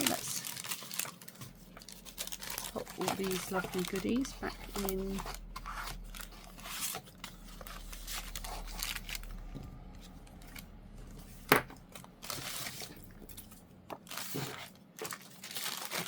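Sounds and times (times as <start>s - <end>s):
paper and packaging rustling: 0.0s - 16.0s.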